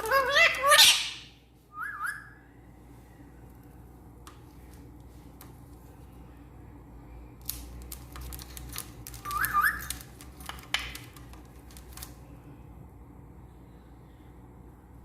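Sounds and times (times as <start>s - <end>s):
parrot whistling: 0.0s - 2.4s, 9.2s - 10.0s
clicks and rustles: 7.4s - 12.2s.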